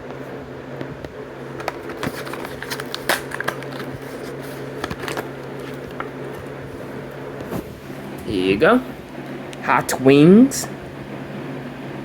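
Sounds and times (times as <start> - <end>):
steady low hum: 0.0 - 12.0
plastic and cardboard crackling: 1.5 - 6.6.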